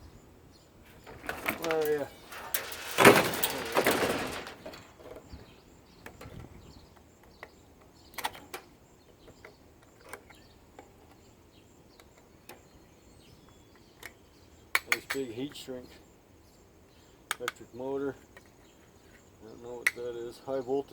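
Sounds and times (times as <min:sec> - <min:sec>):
faint birds chirping: 0:00.0 - 0:20.9
plastic parts scraping: 0:00.9 - 0:05.2.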